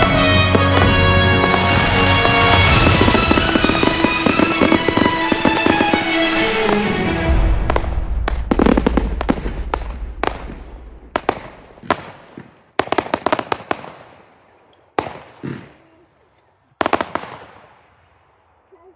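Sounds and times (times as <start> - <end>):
deep rumble: 0.0 - 11.8
fireworks bangs: 0.0 - 14.3, 15.0 - 15.9, 16.8 - 18.0.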